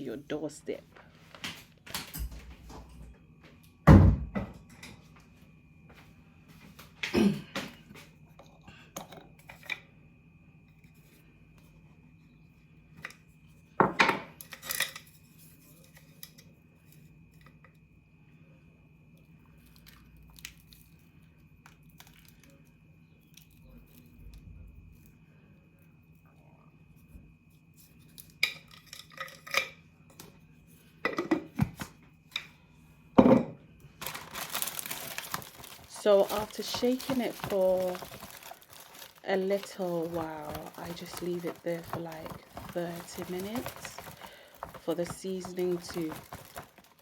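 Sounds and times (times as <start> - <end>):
kitchenware thuds and clatters: 3.9 - 5.0, 13.8 - 14.9, 31.1 - 31.9, 33.2 - 47.0.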